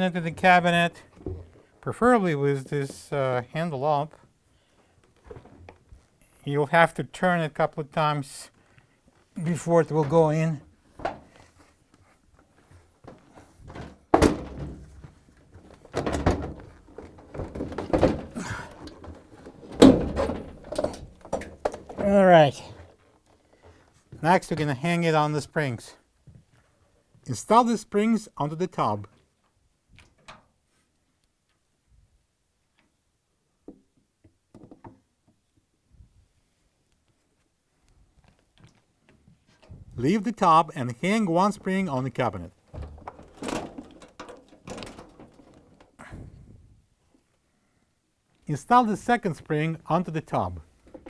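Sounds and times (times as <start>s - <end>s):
hollow thunks of washer tub: 11.0s - 11.4s, 13.1s - 22.6s, 42.7s - 45.8s.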